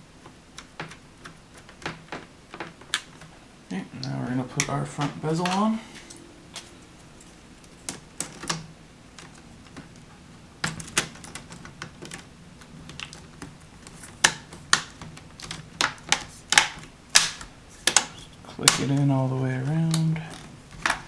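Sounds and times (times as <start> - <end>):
plastic clips snapping into place: 7.6 - 19.1, 19.8 - 21.0.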